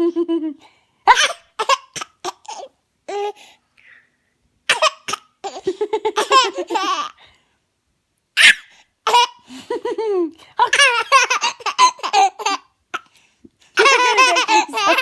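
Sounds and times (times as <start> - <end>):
baby laughing: 1.1 - 3.4, 4.7 - 7.2, 8.4 - 13.1, 13.7 - 15.0.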